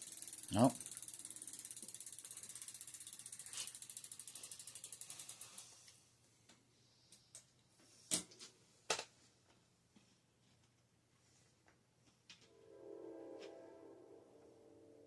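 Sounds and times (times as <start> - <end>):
bicycle freewheel clicking: 0.0 - 6.0.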